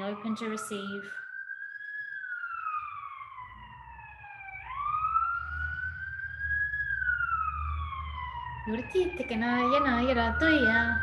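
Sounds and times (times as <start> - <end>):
wailing siren: 0.0 - 11.0
low rumble: 3.4 - 11.0.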